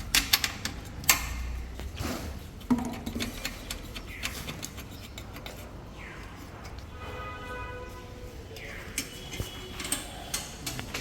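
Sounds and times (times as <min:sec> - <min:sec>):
tools clicking and knocking: 0:00.0 - 0:01.5, 0:02.6 - 0:05.7, 0:08.9 - 0:11.0.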